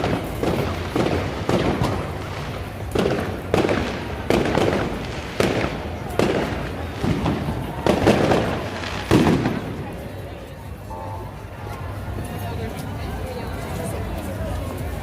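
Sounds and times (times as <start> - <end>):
fireworks bursting with echoing rumble: 0.0 - 10.3.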